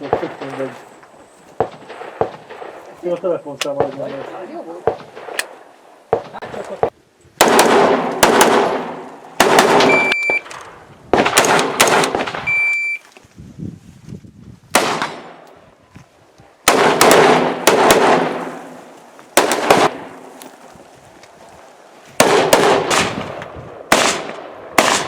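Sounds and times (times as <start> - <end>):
rifle shots echoing: 0.0 - 0.8, 1.6 - 3.0, 3.7 - 10.5, 11.1 - 12.6, 14.7 - 15.4, 16.6 - 20.3, 22.2 - 25.0
short beeps: 9.9 - 10.5, 12.5 - 13.0.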